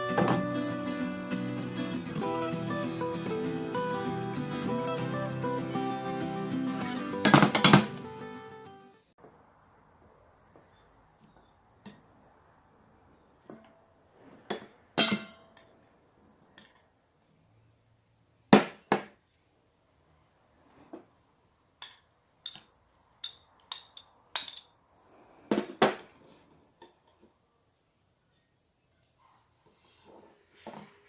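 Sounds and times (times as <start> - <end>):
dishes and utensils clinking: 0.1 - 0.5, 7.2 - 8.0, 14.4 - 15.8, 21.8 - 24.8.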